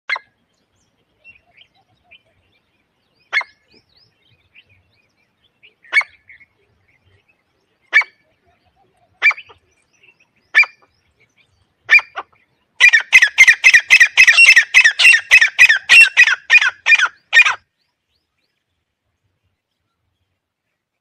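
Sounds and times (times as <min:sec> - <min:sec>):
faint bird chirps: 0:00.1 - 0:21.0
partridge short sharp calls: 0:03.3 - 0:03.8, 0:05.6 - 0:06.5, 0:07.8 - 0:09.7, 0:10.5 - 0:10.9, 0:11.8 - 0:17.6.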